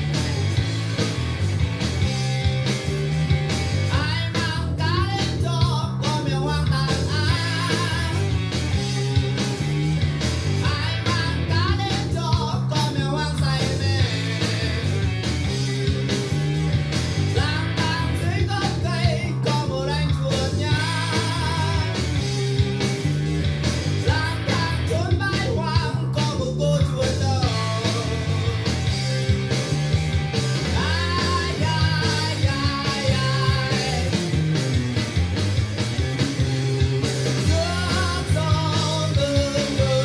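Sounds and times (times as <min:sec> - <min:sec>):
bass line: 0:00.0 - 0:40.0.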